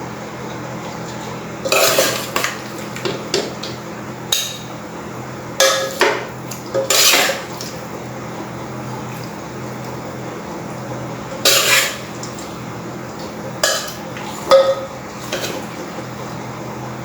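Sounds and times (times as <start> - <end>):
metal spoon scraping a pan: 1.1 - 2.6, 5.6 - 7.5, 11.4 - 12.3, 13.6 - 15.7.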